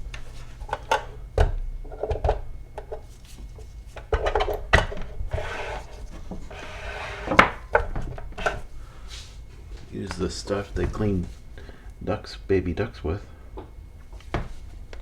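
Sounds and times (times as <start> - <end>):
metal rubbing and scraping: 5.3 - 7.4.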